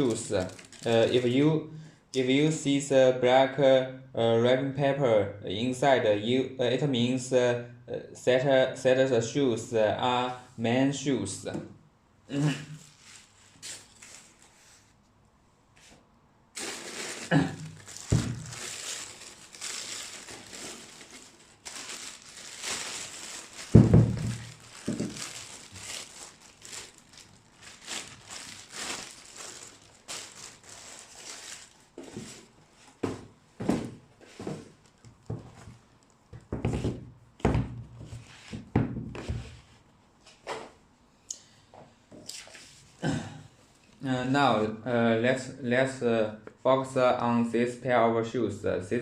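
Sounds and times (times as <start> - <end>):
tissue paper rustling: 0.0 - 1.2, 12.6 - 15.0, 16.6 - 33.0.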